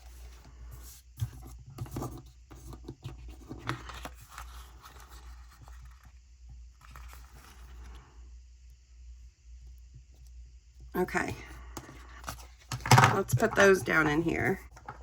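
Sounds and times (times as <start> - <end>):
paper rustling and scraping: 0.0 - 6.1, 6.8 - 8.0
steady low hum: 0.0 - 15.0.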